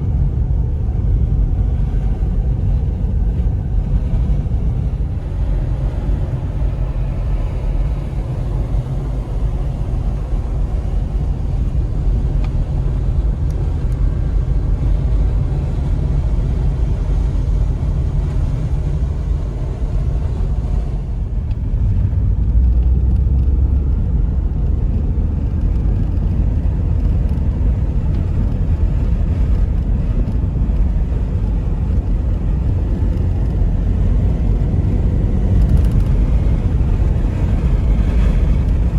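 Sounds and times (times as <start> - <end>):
car engine and road rumble: 0.0 - 38.9.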